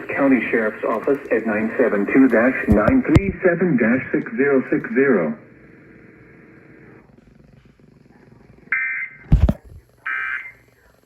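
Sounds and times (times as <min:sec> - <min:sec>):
faint radio hiss: 0:00.0 - 0:11.0
loud thump: 0:02.7 - 0:03.4.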